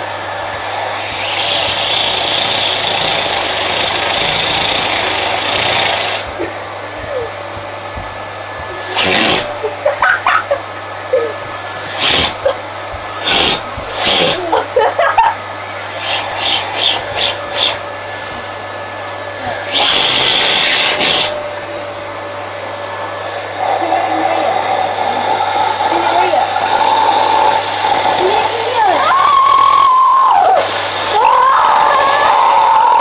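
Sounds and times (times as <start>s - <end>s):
vacuum cleaner motor running: 0.0s - 33.0s
short sharp bursts of noise: 7.9s - 10.4s, 11.6s - 14.6s, 19.7s - 21.4s.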